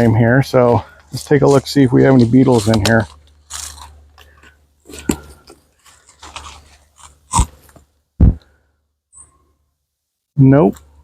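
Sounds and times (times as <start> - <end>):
wax comb crunching and scraping: 0.9 - 7.9.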